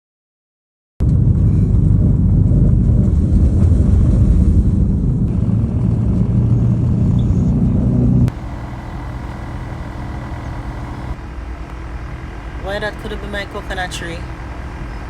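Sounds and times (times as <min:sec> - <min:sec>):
wind buffeting microphone: 0:01.0 - 0:12.6.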